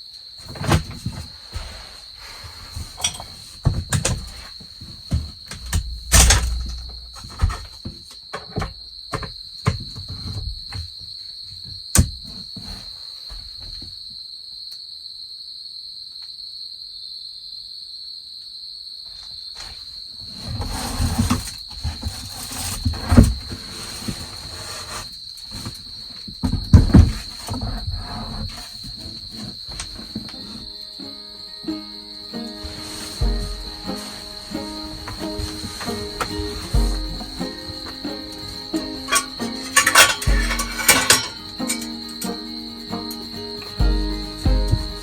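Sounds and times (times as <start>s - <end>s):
crickets chirring: 0.0s - 45.0s
rustling and bumps: 0.4s - 14.0s, 19.6s - 30.7s, 32.6s - 42.6s, 43.3s - 45.0s
objects knocking and clattering: 2.7s - 10.9s, 26.4s - 30.5s, 33.2s - 42.3s.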